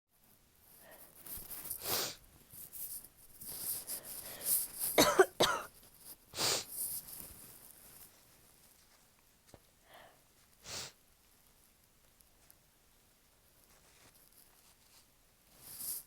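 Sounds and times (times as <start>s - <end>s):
person sniffling: 1.8s - 2.2s, 6.4s - 6.8s, 9.9s - 11.0s
harsh coughs: 5.0s - 5.7s.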